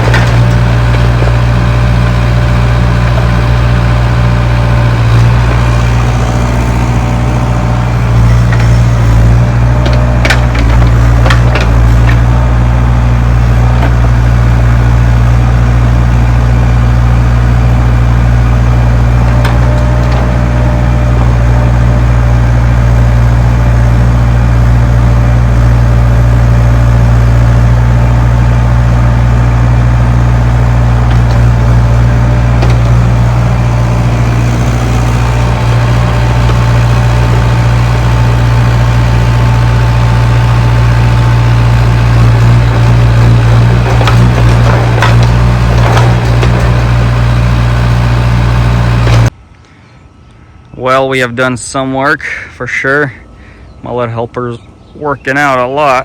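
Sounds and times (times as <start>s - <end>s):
excavator diesel engine running: 0.0s - 56.0s
sharp knocks: 8.2s - 12.5s, 31.0s - 37.8s, 42.1s - 48.1s.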